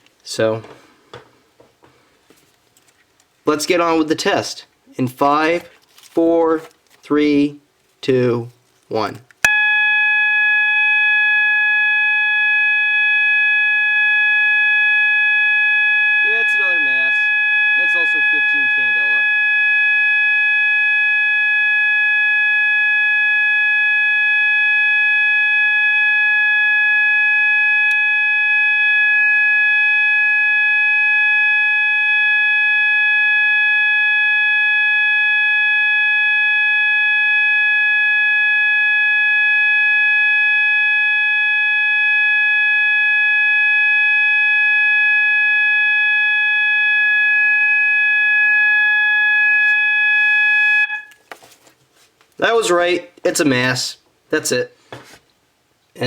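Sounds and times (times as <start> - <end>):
steady fire alarm tone: 9.4 - 51.2.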